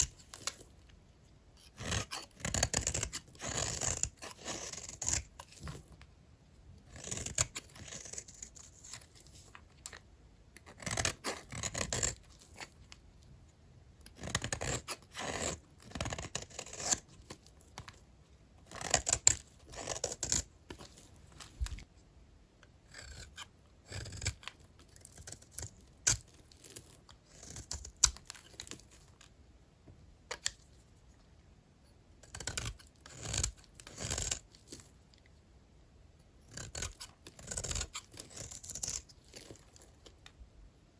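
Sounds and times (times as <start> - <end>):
knife scraping through hard soap: 1.6 - 5.9, 6.9 - 10.0, 10.7 - 12.8, 14.1 - 18.0, 18.7 - 21.8, 22.9 - 29.2, 32.2 - 35.0, 36.4 - 40.2.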